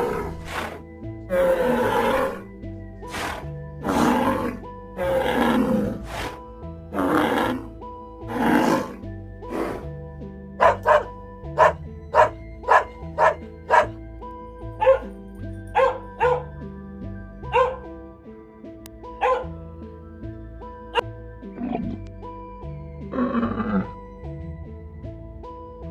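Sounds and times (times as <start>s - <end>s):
background music: 0.0s - 25.9s
dog barking: 10.6s - 14.0s, 14.8s - 15.1s, 15.7s - 16.5s, 17.5s - 17.9s, 19.2s - 19.5s.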